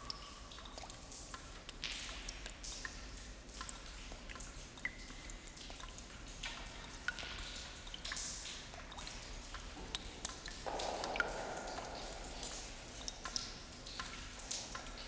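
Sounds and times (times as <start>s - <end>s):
water drops pinging: 8.9s - 15.0s.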